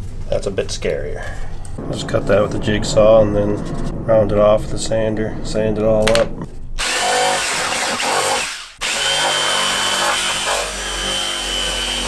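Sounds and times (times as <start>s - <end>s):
jigsaw cutting wood: 6.8s - 12.0s.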